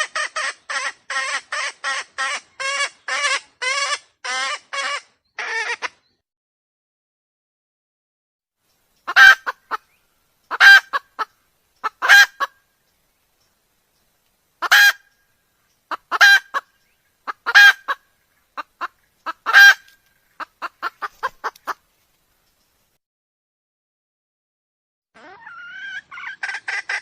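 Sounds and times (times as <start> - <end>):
junglefowl calling: 0.0 - 6.1, 9.0 - 12.6, 14.6 - 15.2, 15.9 - 21.8, 25.2 - 27.0.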